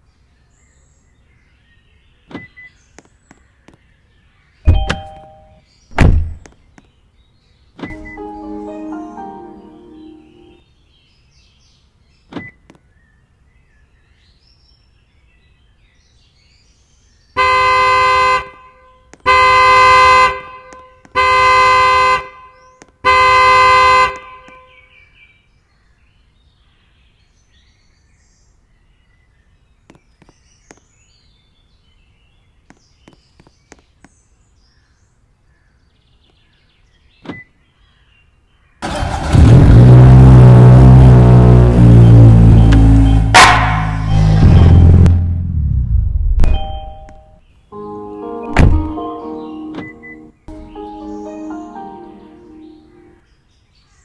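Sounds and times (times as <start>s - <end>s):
loud music: 7.9s - 10.6s, 43.2s - 45.4s
two-tone car horn: 7.9s - 10.6s, 17.4s - 22.5s, 23.1s - 24.6s, 41.0s - 45.5s.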